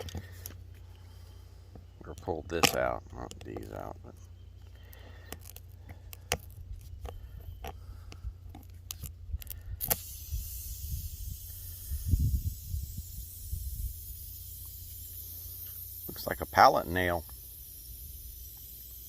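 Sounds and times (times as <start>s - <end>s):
air hissing from tire: 9.4s - 19.0s.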